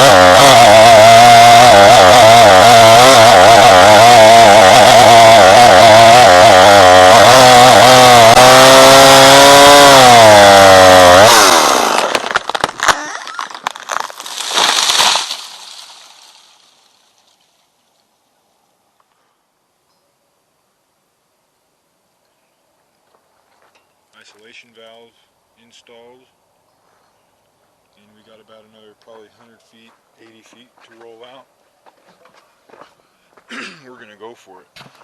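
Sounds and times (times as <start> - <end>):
chainsaw running at high revs: 0.0 - 12.4
clattering and crackling: 12.0 - 16.6.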